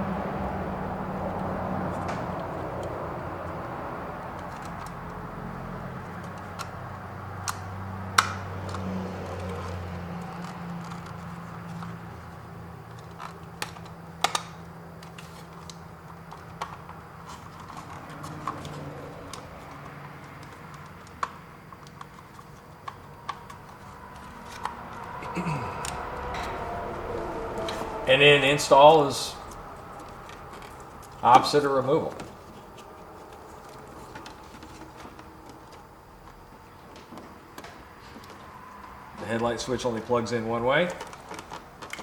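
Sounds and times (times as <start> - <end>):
low hum: 23.0 - 31.3.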